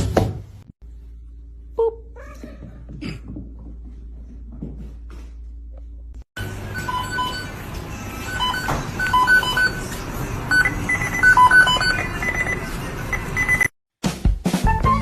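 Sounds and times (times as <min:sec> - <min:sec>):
short electronic beeps: 0:10.5 - 0:13.7.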